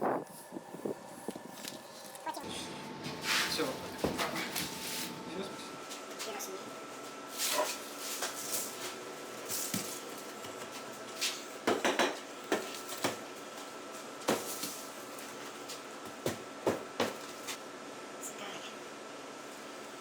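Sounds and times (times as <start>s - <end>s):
faint high whine: 0.0s - 7.7s.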